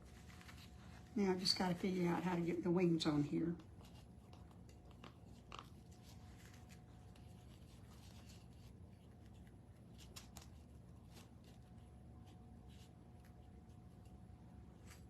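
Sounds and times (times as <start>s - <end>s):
small clicks and rustles: 3.5s - 14.2s.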